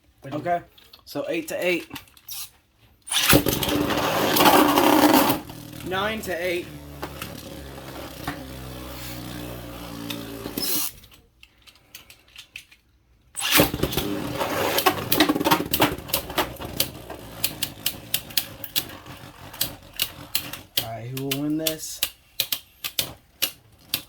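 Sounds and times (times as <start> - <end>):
launch burst: 3.1 - 10.9, 13.4 - 15.7
spinning tops whirring: 3.1 - 11.0, 13.4 - 20.9
tops clacking together: 13.4 - 24.0.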